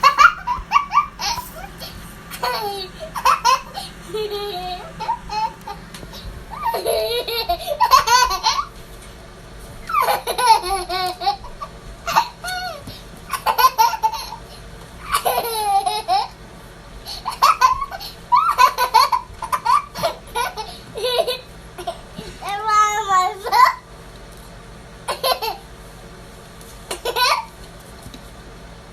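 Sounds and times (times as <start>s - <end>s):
toddler girl laughing: 0.0s - 8.7s, 9.9s - 14.4s, 15.1s - 16.4s, 17.2s - 23.8s, 25.1s - 25.6s, 26.9s - 27.5s.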